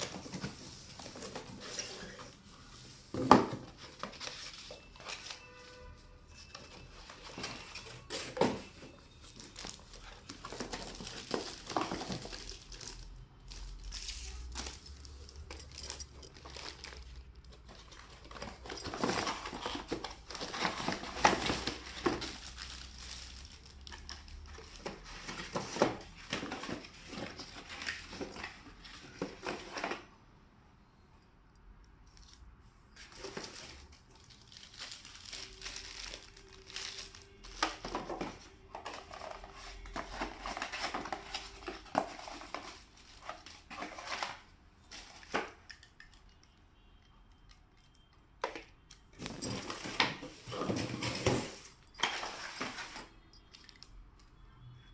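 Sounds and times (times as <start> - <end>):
plastic wrapping crinkling: 3.8 - 30.0, 32.2 - 46.2.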